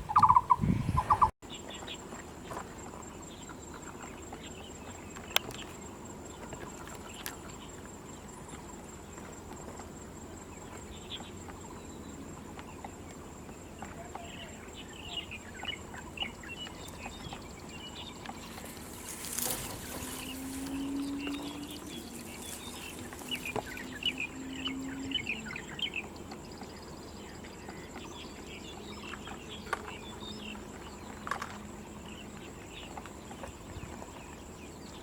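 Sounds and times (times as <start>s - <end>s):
barbet low hollow call: 0.0s - 1.3s, 18.5s - 26.1s
small birds chirping: 0.0s - 9.2s, 10.5s - 35.0s.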